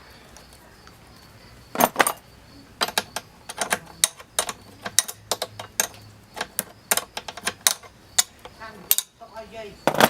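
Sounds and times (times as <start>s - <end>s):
ratchet wrench clicking: 2.8s - 9.2s.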